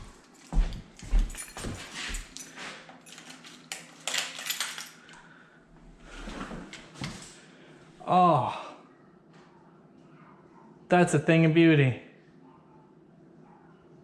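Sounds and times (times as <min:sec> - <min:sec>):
keys jangling: 0:00.0 - 0:05.2.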